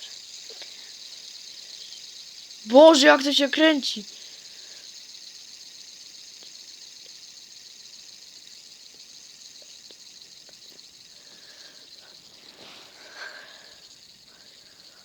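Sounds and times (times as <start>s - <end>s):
faint ticks: 0.0s - 15.0s
fidget spinner whirring: 0.0s - 15.0s.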